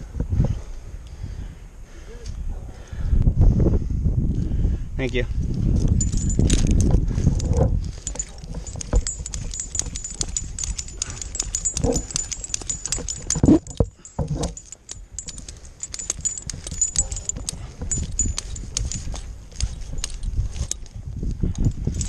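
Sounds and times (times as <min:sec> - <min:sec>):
carabiners clicking and jingling: 0:05.6 - 0:22.0.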